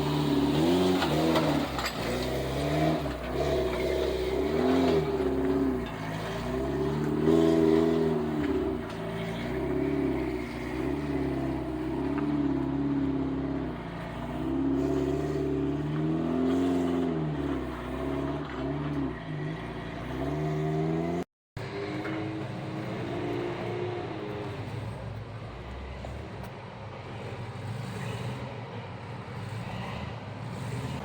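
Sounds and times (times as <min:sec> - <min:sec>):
off-road vehicle engine revving: 0:00.0 - 0:31.0.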